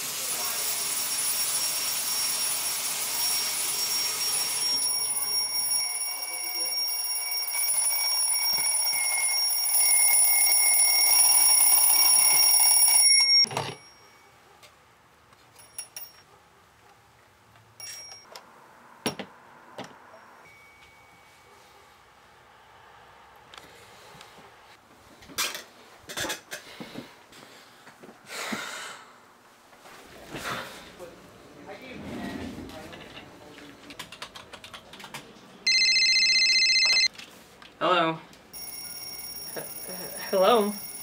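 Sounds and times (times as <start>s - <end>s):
alarm clock ringing: 0.3s - 14.3s, 35.7s - 37.1s, 38.5s - 41.0s.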